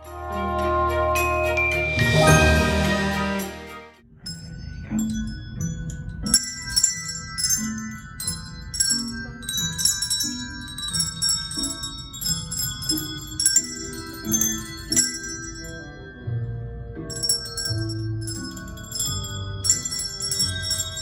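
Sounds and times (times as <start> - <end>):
handbells playing a melody: 0.0 - 3.6, 4.3 - 21.0.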